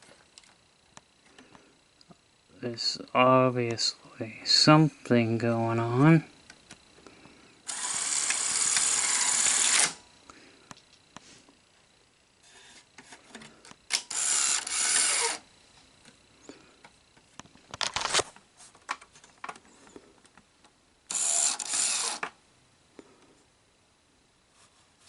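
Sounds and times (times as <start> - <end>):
gear and motor whir: 7.7 - 10.0, 13.9 - 15.4, 21.1 - 22.3
mechanism clicks: 7.7 - 10.0, 13.7 - 15.4.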